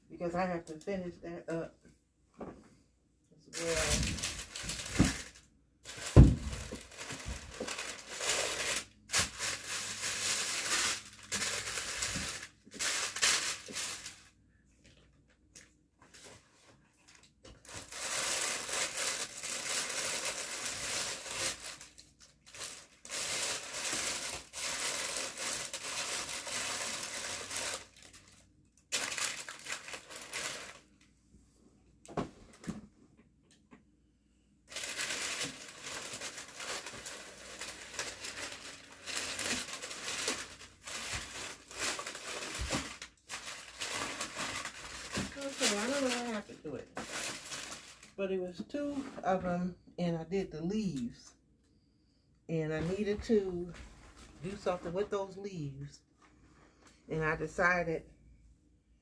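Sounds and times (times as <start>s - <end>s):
crinkly packaging rustling: 3.5s - 31.0s, 34.7s - 49.0s.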